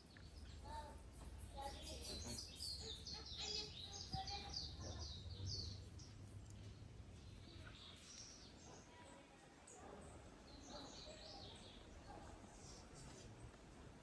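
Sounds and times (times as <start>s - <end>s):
bird chirping: 0.0s - 6.3s.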